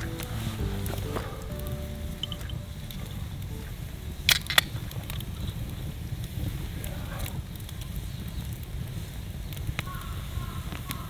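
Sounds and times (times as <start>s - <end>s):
steady low rumble: 0.0s - 6.9s
sharp pops from fire: 0.0s - 11.0s
wood fire crackling: 0.0s - 11.0s.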